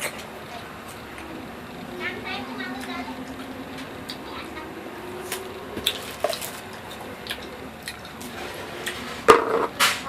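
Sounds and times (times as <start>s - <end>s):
wet chewing of juicy fruit: 5.0s - 9.2s.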